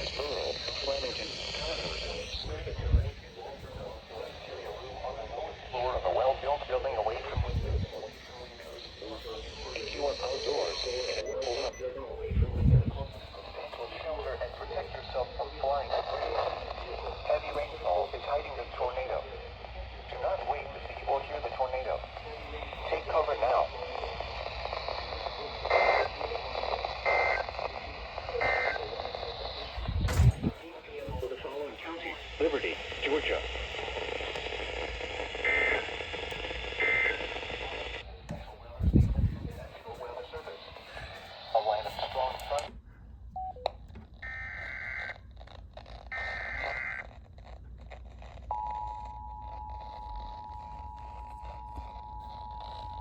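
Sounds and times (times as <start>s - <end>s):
data signal squawks: 0.0s - 4.2s, 8.6s - 12.0s, 27.0s - 27.6s, 28.4s - 30.5s, 43.4s - 45.2s, 46.1s - 47.1s, 48.5s - 53.0s
warbling digital data bursts: 0.0s - 4.6s
radio hiss: 0.0s - 53.0s
two-tone alert signal: 48.5s - 53.0s.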